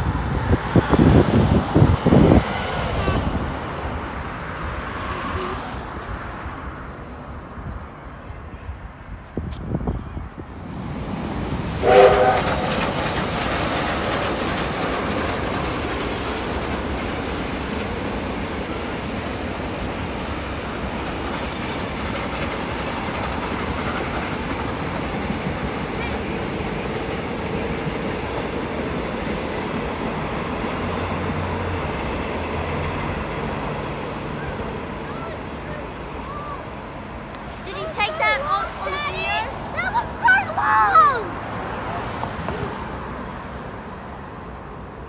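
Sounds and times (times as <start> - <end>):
train rumbling past: 0.0 - 45.0
train horn blast: 11.8 - 12.8.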